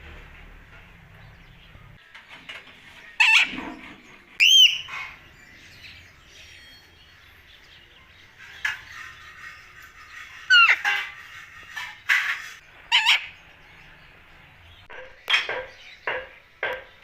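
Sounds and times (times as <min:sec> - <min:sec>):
parrot calling: 0:04.4 - 0:05.2, 0:08.6 - 0:13.4.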